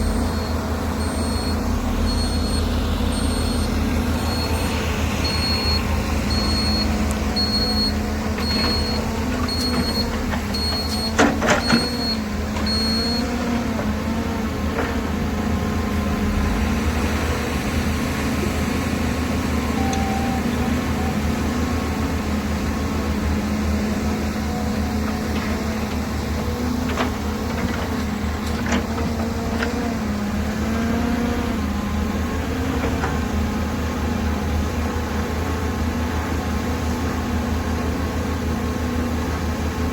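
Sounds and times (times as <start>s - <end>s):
reversing alarm beeping: 0.0s - 13.5s, 19.5s - 21.9s
heavy diesel machinery running: 0.0s - 39.9s.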